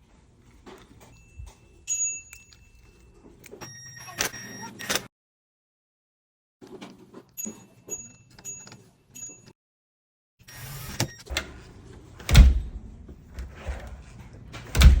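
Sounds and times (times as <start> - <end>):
door latch clicking: 12.2 - 12.8, 14.6 - 15.0
door thumping shut: 12.2 - 13.8, 14.6 - 15.0.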